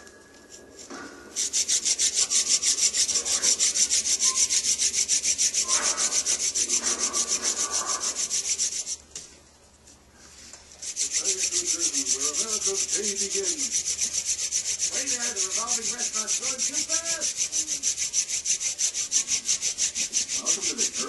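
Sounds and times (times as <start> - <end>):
wooden spindle rasping in socket: 1.4 - 9.0, 10.8 - 21.0.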